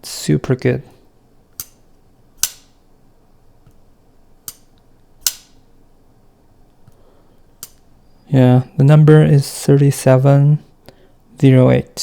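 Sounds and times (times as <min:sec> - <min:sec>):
pocket knife blade clicking: 0:01.6 - 0:01.8, 0:02.4 - 0:02.7, 0:04.5 - 0:05.6.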